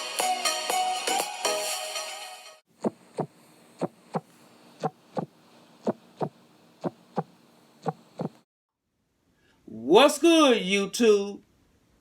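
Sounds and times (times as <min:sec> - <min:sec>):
heartbeat thumps: 0:02.8 - 0:08.4
faint steady hum: 0:02.8 - 0:12.0.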